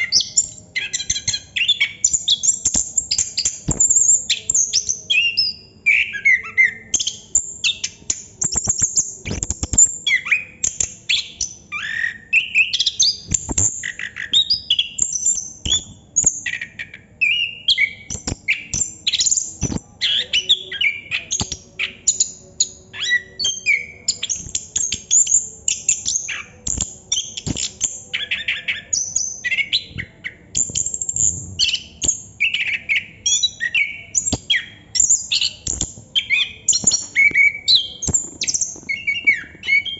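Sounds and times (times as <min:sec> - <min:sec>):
sharp clicks: 0:18.1 - 0:18.4, 0:19.6 - 0:19.8.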